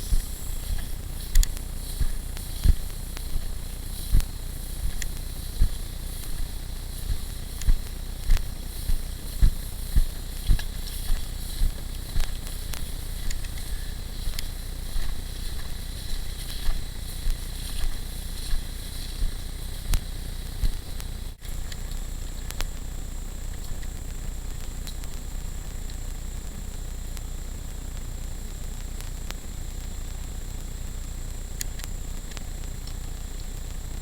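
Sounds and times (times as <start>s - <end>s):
footsteps as low thuds: 0.0s - 21.8s
steady outdoor hiss: 0.0s - 34.0s.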